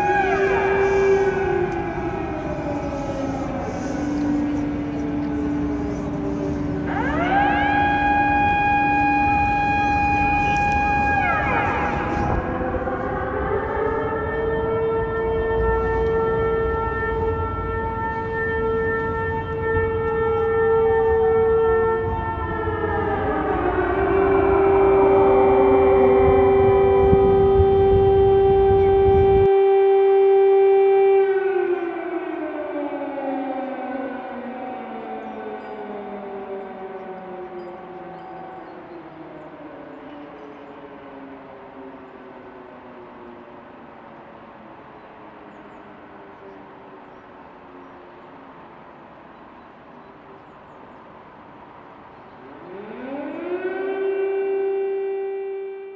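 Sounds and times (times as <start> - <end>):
warning siren: 0.0 - 55.9.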